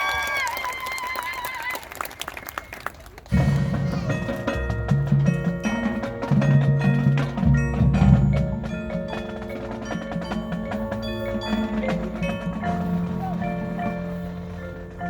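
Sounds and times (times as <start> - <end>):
mallet percussion ringing notes: 3.3 - 15.0
marching band playing: 3.3 - 15.0.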